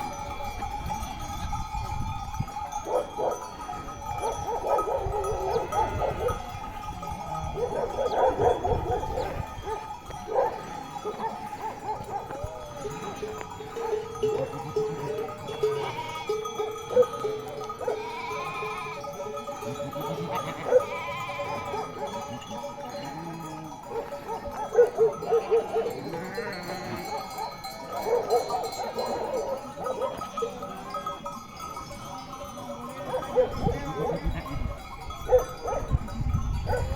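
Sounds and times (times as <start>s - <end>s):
sheep bleating: 14.4s - 16.6s, 17.8s - 23.8s, 25.5s - 27.2s.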